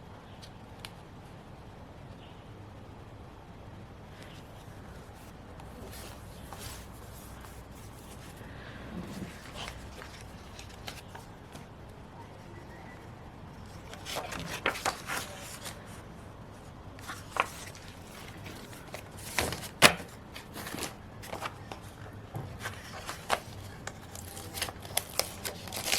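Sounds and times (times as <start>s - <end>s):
paper rustling: 4.1s - 11.7s, 13.6s - 25.9s.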